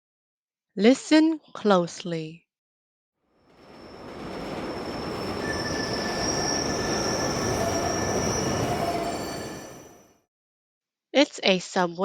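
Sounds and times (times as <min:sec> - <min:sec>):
subway train rumbling: 0:03.4 - 0:10.1
steel wheels squealing: 0:03.6 - 0:10.1.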